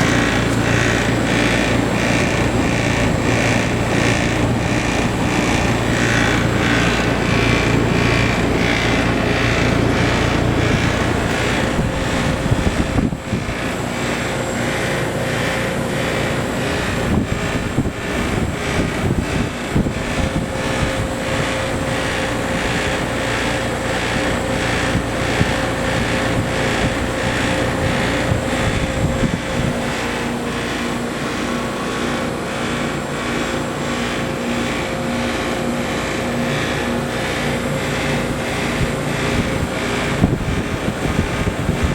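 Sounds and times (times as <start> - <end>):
unit rattling: 0.0 - 14.6
compressor hum: 0.0 - 41.9
condenser fan rushing: 0.0 - 41.9.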